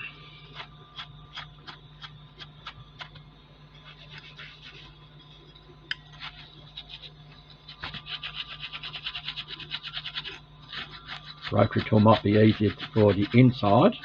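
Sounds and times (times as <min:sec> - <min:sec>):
scouring pad scraping metal: 0:08.0 - 0:14.0.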